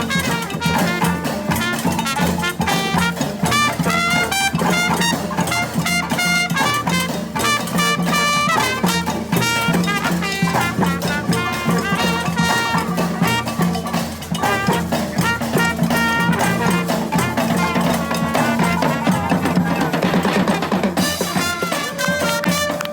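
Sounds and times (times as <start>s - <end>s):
brass band playing: 0.0s - 22.9s.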